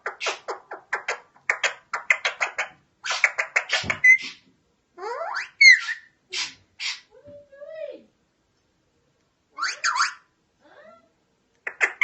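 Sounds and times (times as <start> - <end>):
parakeet chattering calls: 0.0 - 7.1, 9.6 - 10.3, 11.6 - 12.0.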